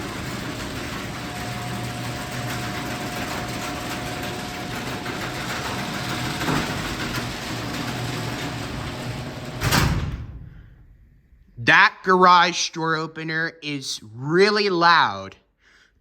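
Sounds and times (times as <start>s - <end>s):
garage door opener running: 0.0s - 10.7s.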